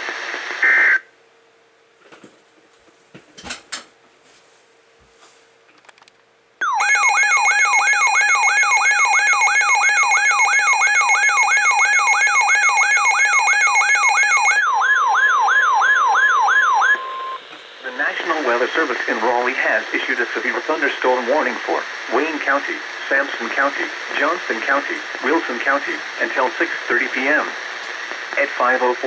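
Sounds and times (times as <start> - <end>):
warbling emergency alert tone: 6.6 - 18.0.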